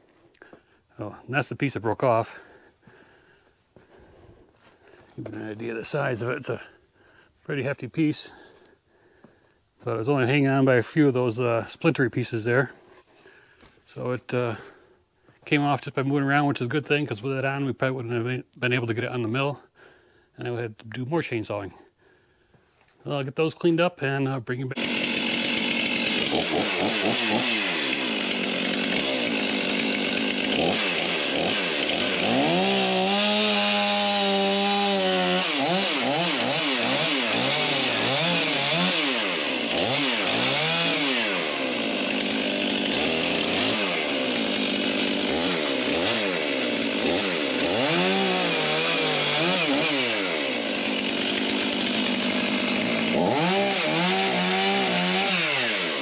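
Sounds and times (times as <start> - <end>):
chainsaw cutting wood: 2.2 - 6.7, 12.7 - 14.8, 24.7 - 56.0.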